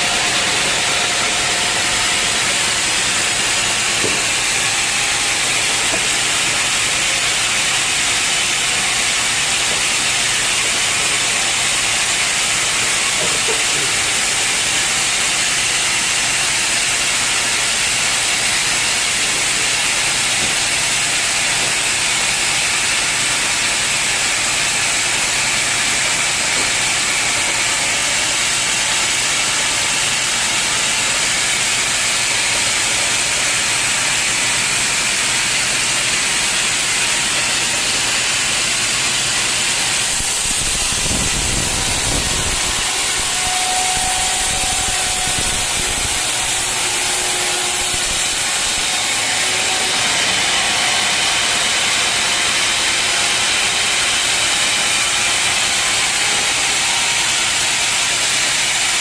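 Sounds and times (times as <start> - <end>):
saw cutting through log: 0.0 - 59.0
knocks: 4.0 - 4.5.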